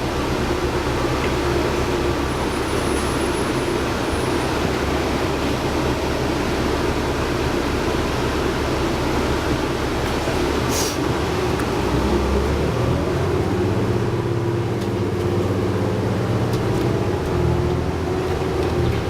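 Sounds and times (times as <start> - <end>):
bus diesel engine running: 0.0 - 19.0
road noise: 0.0 - 19.0
short hiss: 10.7 - 11.0.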